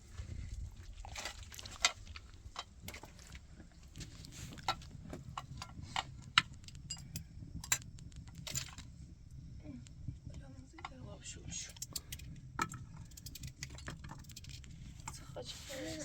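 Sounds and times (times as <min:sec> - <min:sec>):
steady low rumble: 0:00.0 - 0:16.0
sharp clicks and light knocks: 0:11.7 - 0:15.2.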